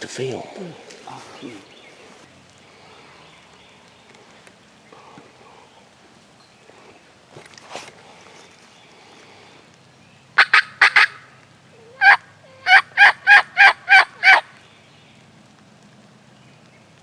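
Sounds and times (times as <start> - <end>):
turkey yelps: 10.4 - 14.5.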